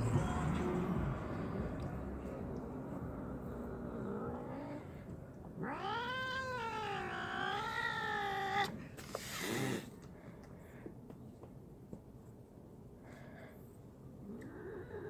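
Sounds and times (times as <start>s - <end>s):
cat yowling: 5.6s - 8.7s.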